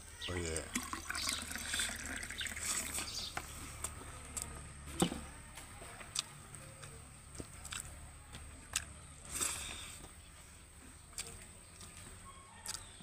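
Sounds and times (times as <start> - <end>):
chewing and mouth sounds: 6.1 - 8.0, 11.1 - 13.0.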